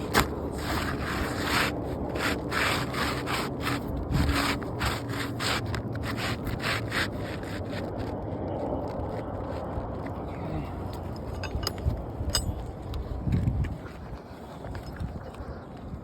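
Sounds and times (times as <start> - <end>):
roof shingle scraping and rubbing: 0.0 - 10.3.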